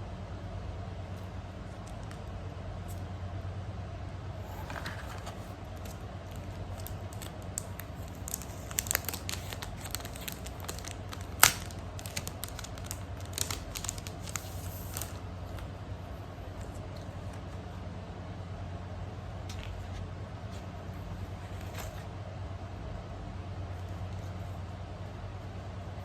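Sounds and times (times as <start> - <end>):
steady low hum: 0.0 - 26.0
packaging crinkling: 4.5 - 15.6.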